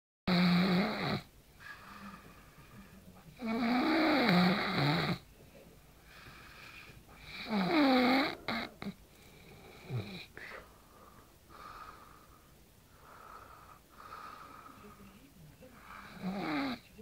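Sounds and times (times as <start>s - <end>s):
quiet breaths: 0.3s - 17.0s
person snoring heavily: 7.3s - 9.0s.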